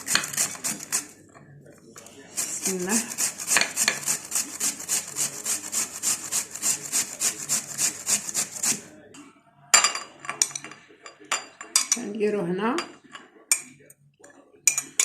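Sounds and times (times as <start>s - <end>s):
turnip rasping on a grater: 0.0s - 1.1s, 2.3s - 8.9s.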